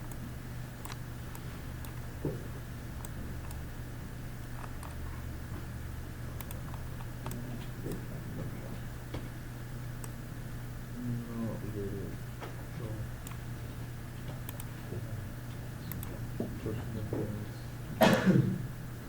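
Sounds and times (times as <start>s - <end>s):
low electrical hum: 0.0s - 19.0s
mouse and keyboard clicks: 4.6s - 5.1s, 6.4s - 8.0s.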